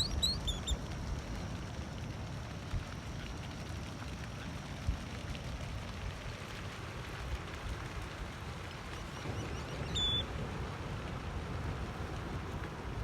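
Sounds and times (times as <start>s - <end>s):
faint high bird chirps: 0.0s - 0.8s, 9.4s - 10.2s.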